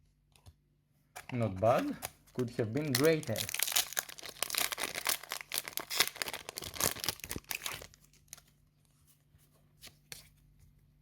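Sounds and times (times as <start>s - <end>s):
foil wrapper crinkling and tearing: 1.9s - 8.5s.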